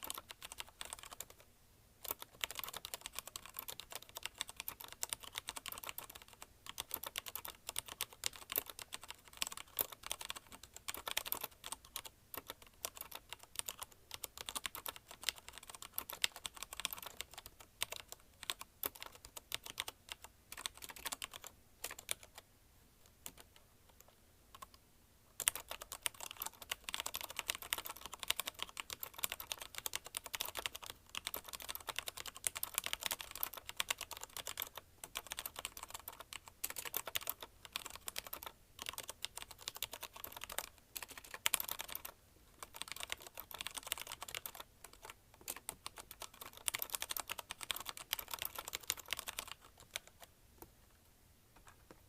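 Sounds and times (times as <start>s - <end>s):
fast mechanical keyboard typing: 0.0s - 1.4s, 2.0s - 22.4s, 23.2s - 23.5s, 24.6s - 24.8s, 25.4s - 50.3s.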